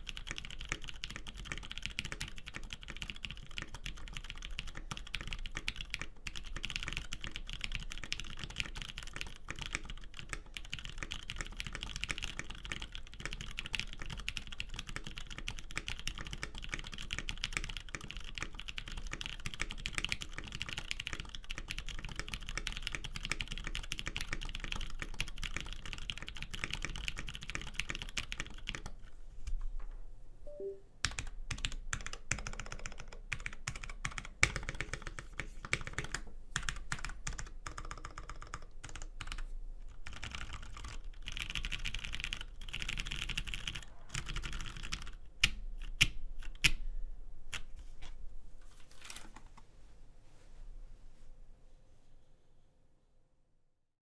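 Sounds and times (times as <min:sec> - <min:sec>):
mechanical keyboard typing: 0:00.0 - 0:29.0, 0:30.5 - 0:46.8.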